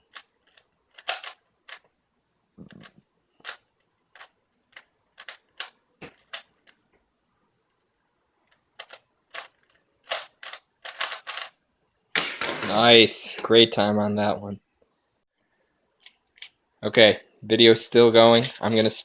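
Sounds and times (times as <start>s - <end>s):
plastic puzzle cube clicking: 0.0s - 1.9s, 2.7s - 6.8s, 8.5s - 11.6s.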